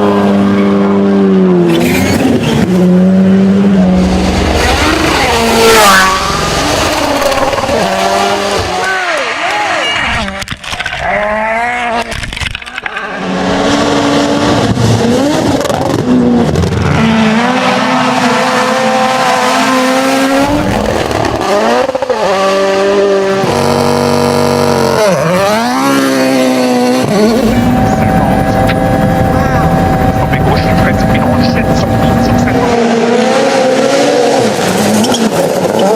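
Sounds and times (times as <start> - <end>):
rally car engines revving: 0.0 - 35.9.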